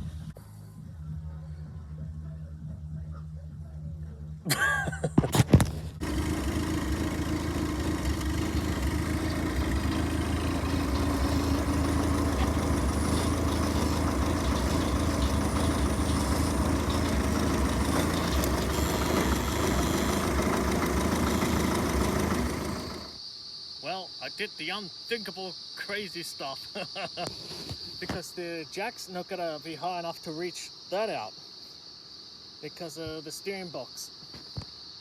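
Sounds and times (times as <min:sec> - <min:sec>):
engine cranking and catching: 0:05.3 - 0:23.2
engine idling: 0:05.6 - 0:23.2.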